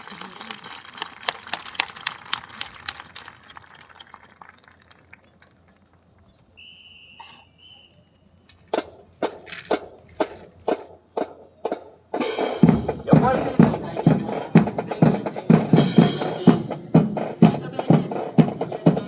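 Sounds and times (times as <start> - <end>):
rifles clapping and clacking: 0.0 - 6.6, 8.4 - 11.0.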